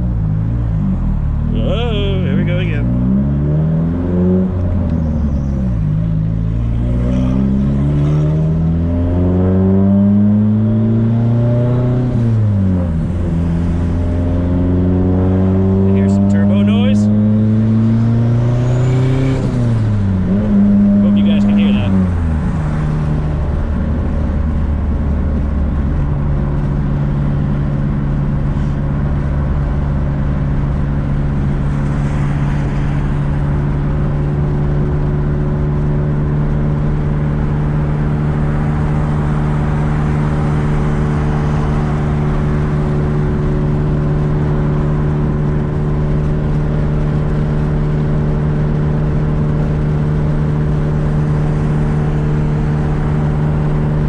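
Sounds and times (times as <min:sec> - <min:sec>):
car engine cruising: 0:00.0 - 0:54.0
road noise: 0:00.0 - 0:54.0.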